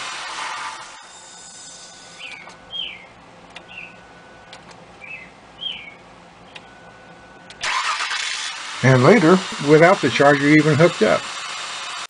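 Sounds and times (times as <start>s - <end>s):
faint steady hum: 1.1s - 7.6s
sharp clicks: 2.2s - 2.6s, 3.5s - 3.7s, 4.5s - 4.8s
bird chirping: 2.2s - 7.5s.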